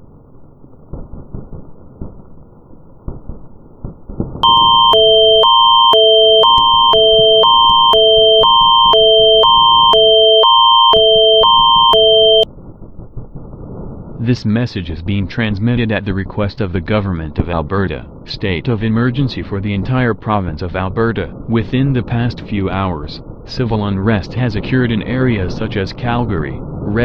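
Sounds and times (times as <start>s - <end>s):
alternating emergency alert tones: 4.4s - 12.5s.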